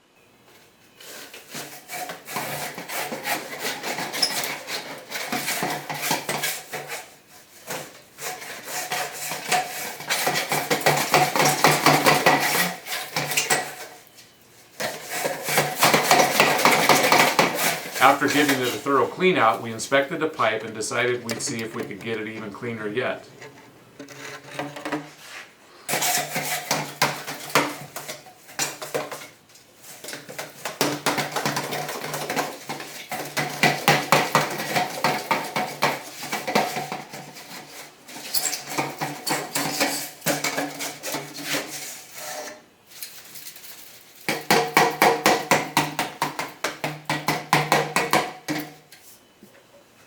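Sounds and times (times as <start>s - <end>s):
rag scraping inside ribbed duct: 1.0s - 14.0s, 14.8s - 28.7s.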